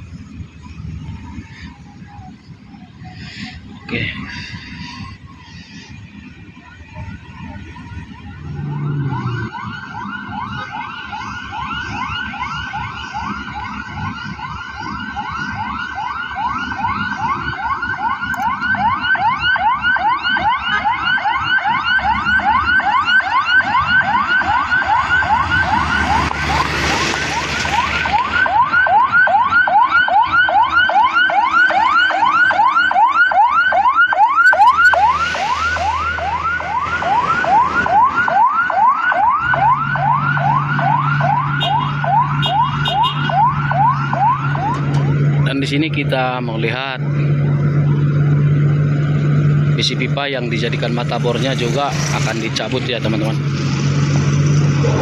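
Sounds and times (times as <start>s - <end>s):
heavy machinery rumble: 0.0s - 10.8s, 43.5s - 55.0s
rising siren-like tone: 0.0s - 55.0s.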